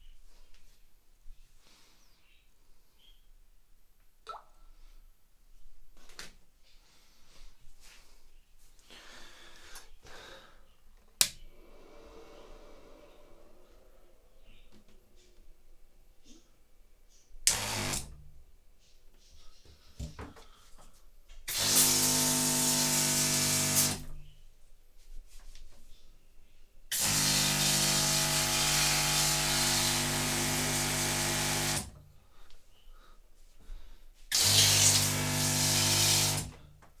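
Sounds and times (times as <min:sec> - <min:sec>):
water spraying: 0:21.5 - 0:24.0, 0:34.3 - 0:36.5
water pump humming: 0:21.5 - 0:24.1, 0:26.9 - 0:32.0, 0:34.3 - 0:36.5.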